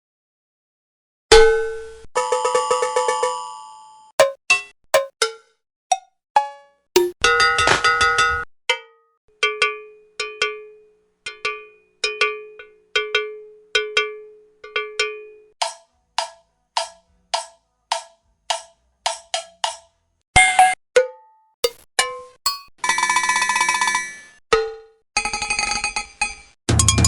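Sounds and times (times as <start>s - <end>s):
cowbell struck with a stick: 7.0s - 7.2s, 21.6s - 21.8s, 22.5s - 22.7s.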